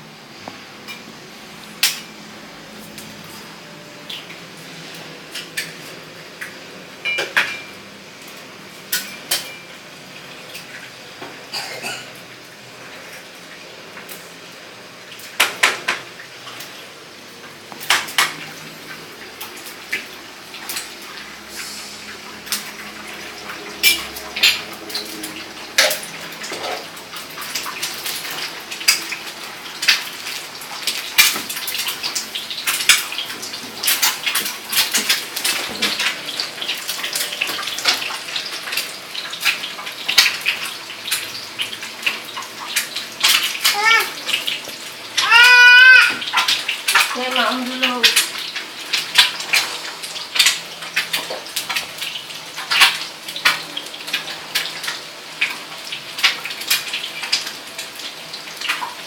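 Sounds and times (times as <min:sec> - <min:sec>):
dishes clinking and clattering: 0:05.3 - 0:07.8, 0:08.8 - 0:09.8, 0:17.7 - 0:18.6, 0:22.5 - 0:47.2.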